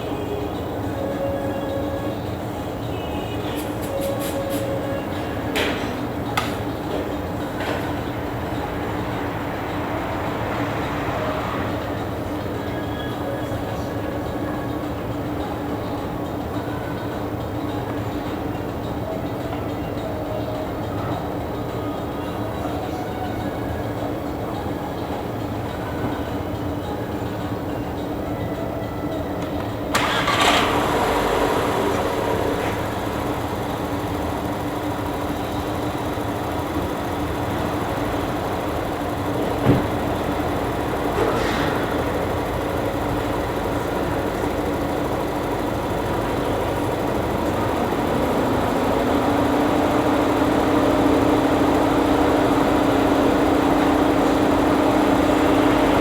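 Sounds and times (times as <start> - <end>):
car engine idling: 29.9 - 56.0.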